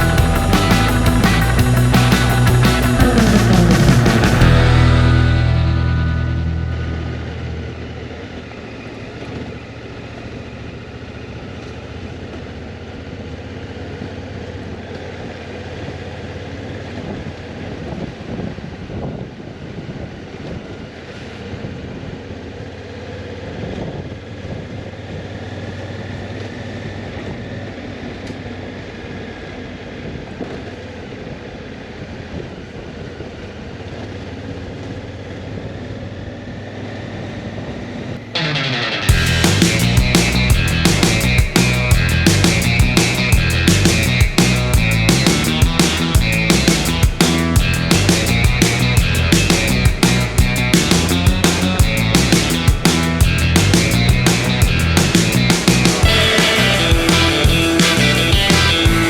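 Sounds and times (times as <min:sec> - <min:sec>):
motorcycle engine running: 0:00.0 - 0:14.8, 0:39.0 - 0:59.0
wind noise on microphone: 0:17.8 - 0:20.7.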